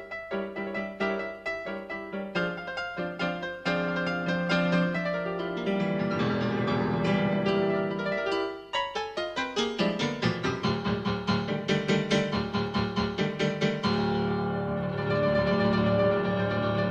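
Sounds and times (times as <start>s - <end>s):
piano music: 0.0s - 16.9s.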